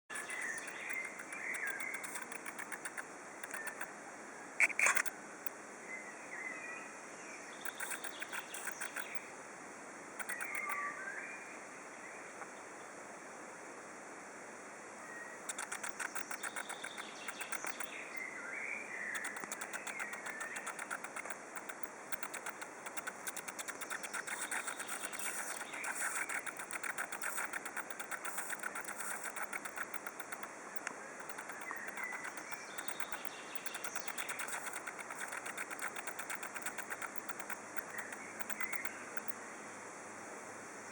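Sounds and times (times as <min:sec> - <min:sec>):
birds chirping: 0:00.0 - 0:09.4, 0:10.2 - 0:13.0, 0:15.0 - 0:39.5
spider rapid clicking: 0:00.1 - 0:03.9, 0:04.6 - 0:05.2, 0:07.6 - 0:09.2, 0:10.2 - 0:10.8, 0:15.4 - 0:18.0, 0:19.1 - 0:39.4.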